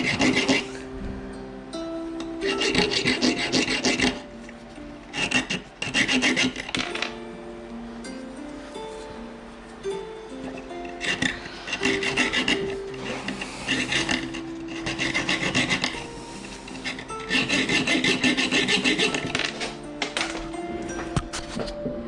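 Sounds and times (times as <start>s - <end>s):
hand file rasping on metal: 0.0s - 0.9s, 2.4s - 4.3s, 5.0s - 7.0s, 10.4s - 19.8s.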